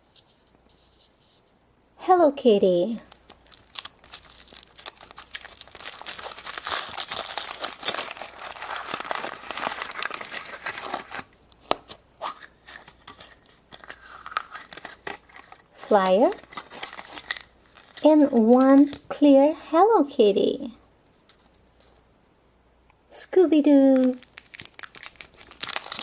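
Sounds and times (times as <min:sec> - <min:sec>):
wrapping crinkling and rustling: 0:02.4 - 0:19.1, 0:21.1 - 0:22.1, 0:23.8 - 0:26.0.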